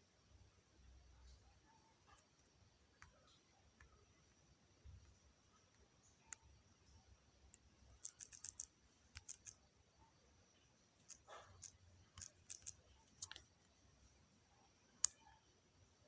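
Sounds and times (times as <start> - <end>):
faint clicks and taps: 1.2 - 9.7, 10.6 - 13.8, 14.9 - 15.5.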